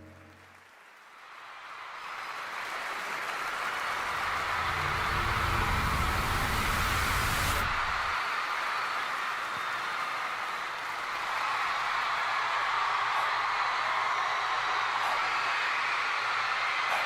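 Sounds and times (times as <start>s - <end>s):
crowd cheering and applauding: 0.0s - 17.0s
deep rumble: 4.0s - 8.1s.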